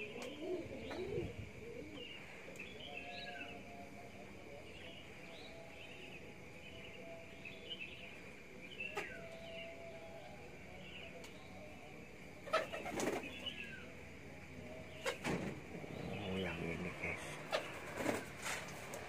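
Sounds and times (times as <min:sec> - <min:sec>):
pigeons cooing: 0:00.0 - 0:03.6, 0:12.4 - 0:13.9, 0:14.8 - 0:19.0
pigeon wings flapping: 0:17.8 - 0:19.0.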